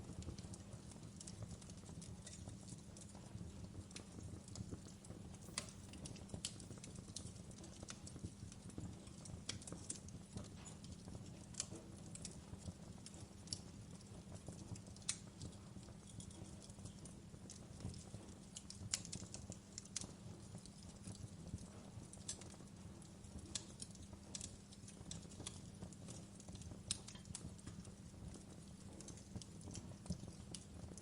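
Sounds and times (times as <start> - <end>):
fireplace crackling: 0.0 - 31.0.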